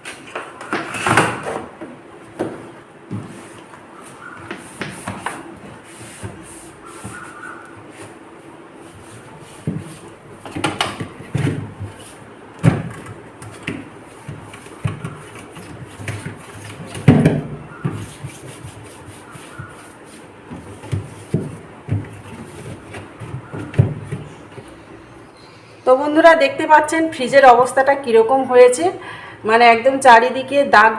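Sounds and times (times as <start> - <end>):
rubbing: 3.3 - 8.2, 13.5 - 24.7
knocks and clunks in refrigerator: 12.6 - 13.9.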